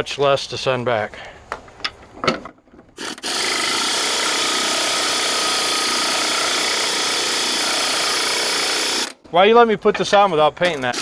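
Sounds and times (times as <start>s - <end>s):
power tool running: 3.0s - 9.2s, 10.7s - 11.0s.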